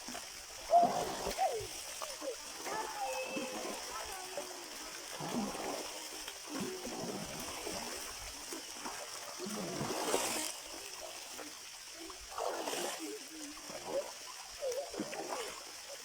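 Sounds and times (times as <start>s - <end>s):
flowing water rushing: 0.0s - 16.0s
water splashing: 0.0s - 16.0s.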